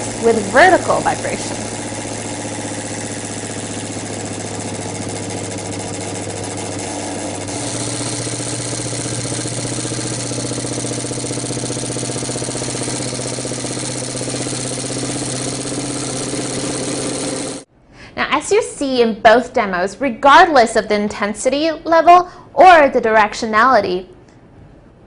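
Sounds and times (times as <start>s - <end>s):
vibration test machine humming: 0.0s - 17.7s.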